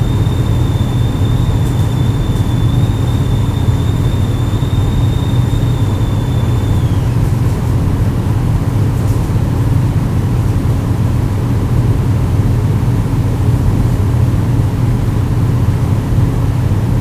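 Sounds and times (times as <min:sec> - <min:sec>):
low mechanical hum: 0:00.0 - 0:08.2.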